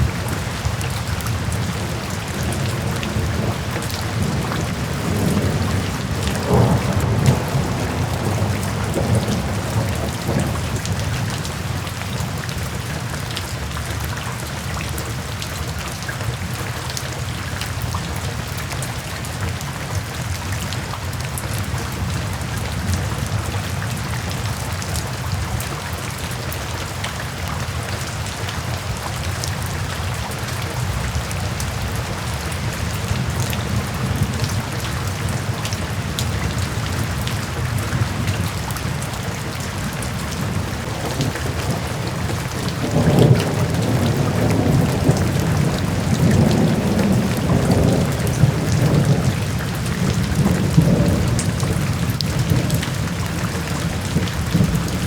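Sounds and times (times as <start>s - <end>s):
low thunder rumble: 0.0s - 12.4s, 30.8s - 55.0s
steady rain falling: 0.0s - 55.0s.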